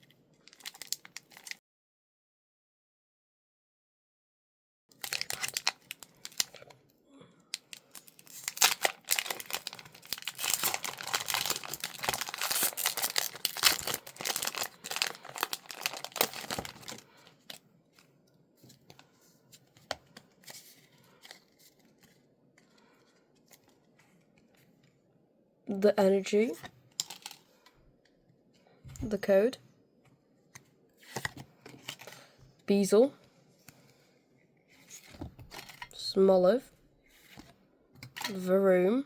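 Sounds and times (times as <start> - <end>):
foil wrapper tearing and crinkling: 0.5 - 1.6, 4.9 - 6.7, 7.6 - 17.5
cards rustling and clicking: 7.6 - 24.5, 30.5 - 32.3, 34.8 - 36.0.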